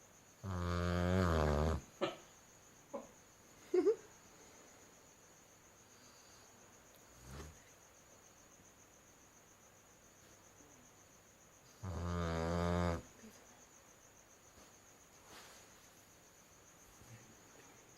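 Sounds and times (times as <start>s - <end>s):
puppy snoring: 0.4s - 1.9s, 7.1s - 7.7s, 11.7s - 13.1s
soft breath: 5.8s - 7.7s.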